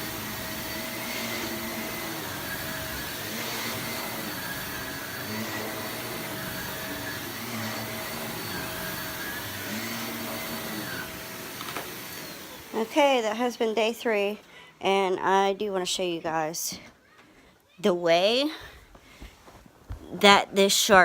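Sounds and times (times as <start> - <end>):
vacuum cleaner motor whine: 0.0 - 13.0.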